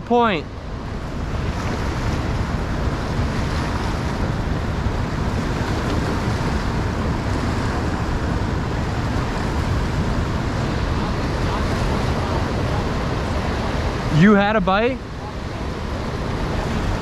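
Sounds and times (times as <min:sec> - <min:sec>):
wind rumbling on microphone: 0:00.0 - 0:14.3, 0:15.0 - 0:17.0
fast-flowing river water: 0:00.0 - 0:17.0.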